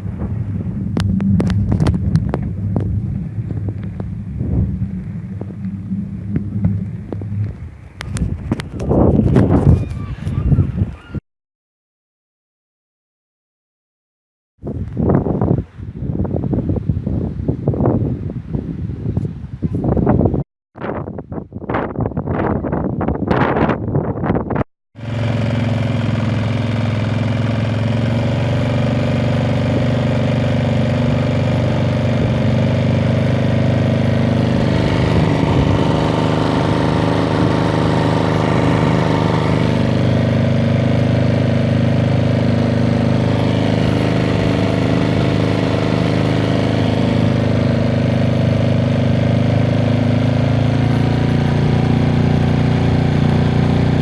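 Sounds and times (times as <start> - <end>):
small engine running: 25.0 - 54.0.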